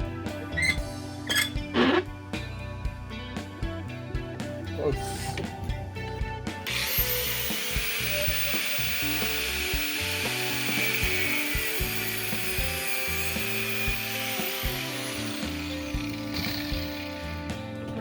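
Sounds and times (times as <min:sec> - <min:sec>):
background music: 0:00.0 - 0:18.0
grinder cutting metal line: 0:00.5 - 0:02.1, 0:06.6 - 0:18.0.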